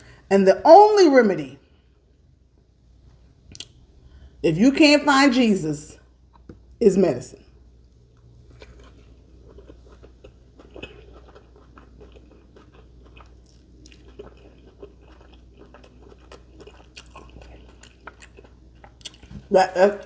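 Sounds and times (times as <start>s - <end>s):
faint low hum: 0.0s - 20.0s
person chewing sandwich: 7.8s - 19.5s.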